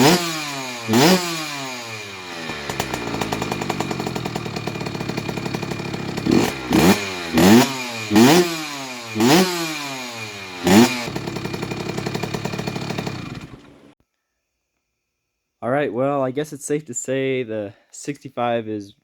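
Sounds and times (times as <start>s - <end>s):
dirt bike engine idling and revving: 0.0s - 14.0s.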